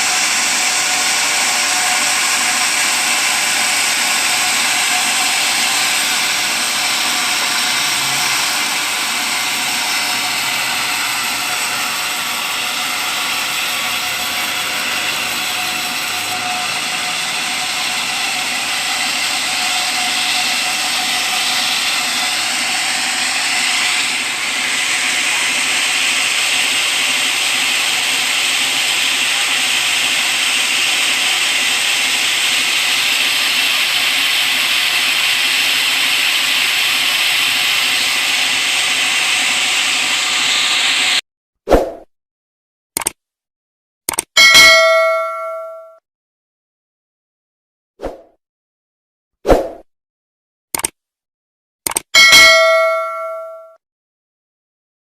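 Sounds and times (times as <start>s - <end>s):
sawmill saw cutting wood: 0.0s - 41.2s.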